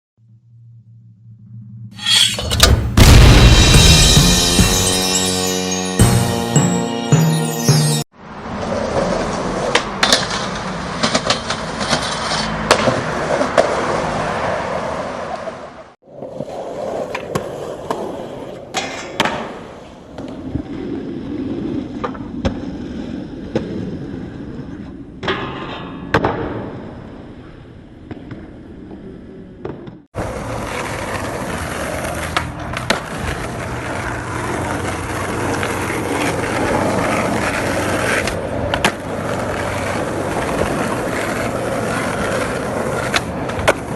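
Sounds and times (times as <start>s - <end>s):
skateboard wheels rolling: 8.3s - 25.4s, 26.1s - 43.9s
skateboard clacks popping and landing: 32.0s - 33.6s, 35.4s - 43.9s.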